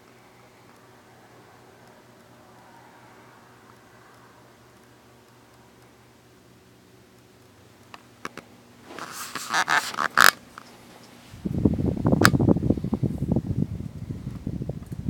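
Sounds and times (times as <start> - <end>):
ceiling fan humming: 0.0 - 15.0
air buffeting microphone: 11.2 - 15.0
fan switch clicks: 11.5 - 12.6.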